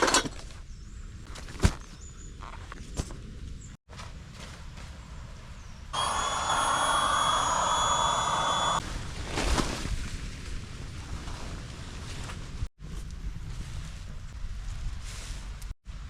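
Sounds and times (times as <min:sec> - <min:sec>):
jet engine whine: 0:06.0 - 0:08.8.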